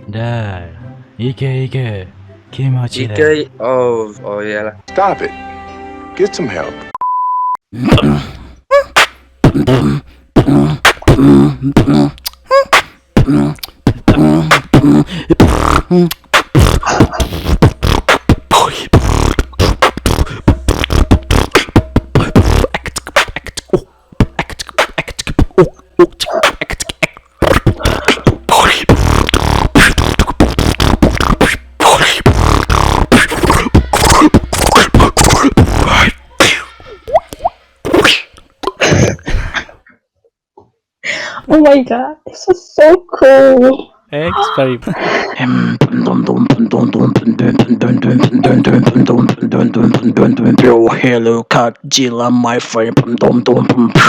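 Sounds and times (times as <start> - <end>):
beatboxing: 7.8 - 39.2, 45.4 - 51.0, 52.6 - 54.0
hummed low bass tones: 9.5 - 12.6, 13.2 - 36.4.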